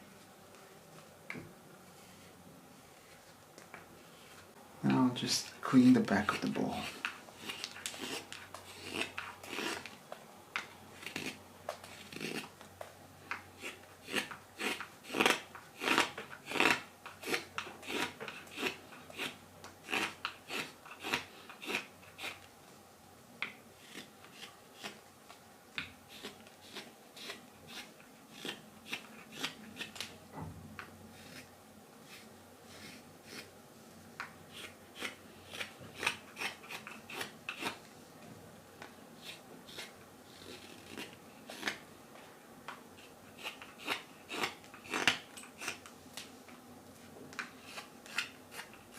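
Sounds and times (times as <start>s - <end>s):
knife shaving wood: 4.1s - 10.0s, 11.0s - 12.6s, 13.3s - 22.5s, 23.8s - 25.0s, 25.8s - 30.1s, 31.1s - 33.5s, 34.5s - 37.8s, 39.2s - 41.8s, 43.0s - 45.9s, 47.4s - 48.9s.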